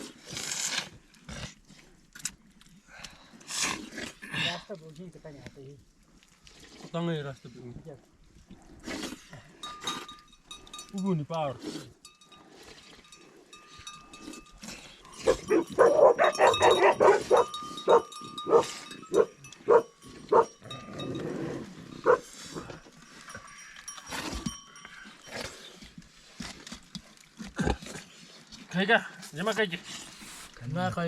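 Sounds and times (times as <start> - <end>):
dog barking: 15.2 - 20.6, 22.0 - 22.3.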